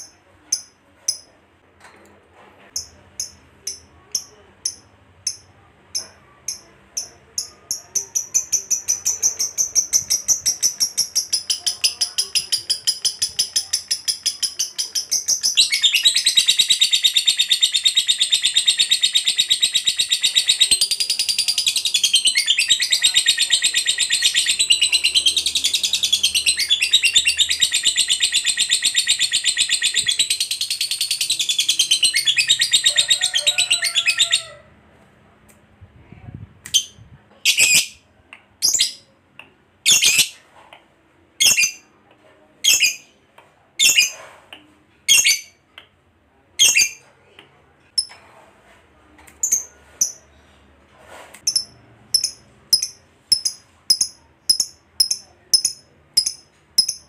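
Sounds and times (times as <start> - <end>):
lovebird high-pitched chatter: 2.8 - 34.6, 36.7 - 38.0, 39.9 - 40.4, 41.4 - 41.9, 42.6 - 43.1, 43.8 - 44.2, 45.1 - 45.6, 46.6 - 47.0, 49.4 - 50.3, 51.4 - 57.0.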